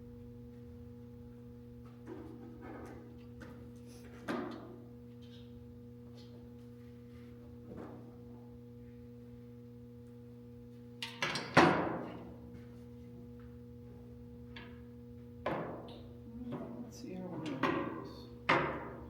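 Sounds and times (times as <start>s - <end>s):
steady low hum: 0.0s - 11.1s.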